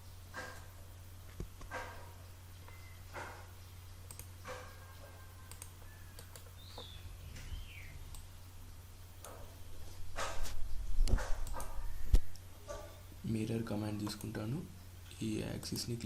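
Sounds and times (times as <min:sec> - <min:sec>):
low electrical hum: 0:00.0 - 0:16.0
computer mouse clicks: 0:04.1 - 0:04.7, 0:05.5 - 0:06.9, 0:11.0 - 0:12.5
faint bird-like chirps: 0:04.5 - 0:08.1.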